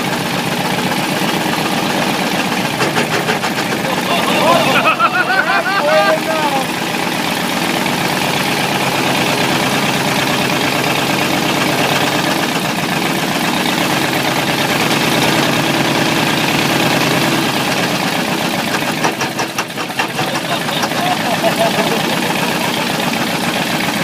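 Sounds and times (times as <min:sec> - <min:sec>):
engine running loudly: 0:00.0 - 0:24.0
sharp engine ticks: 0:01.2 - 0:04.0.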